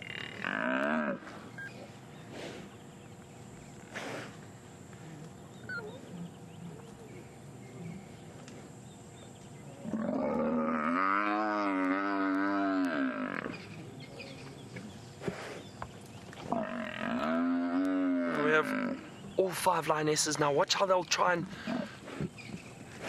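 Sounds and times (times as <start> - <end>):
buffalo bellowing: 9.8 - 13.7.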